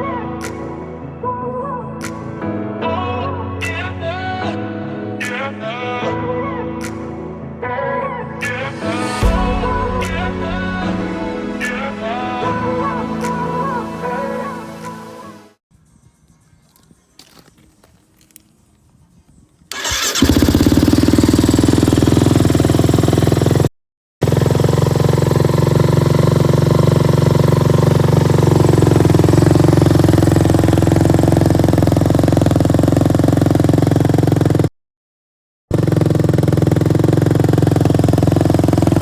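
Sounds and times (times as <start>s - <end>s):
atv engine running: 19.7s - 34.7s, 35.7s - 39.0s.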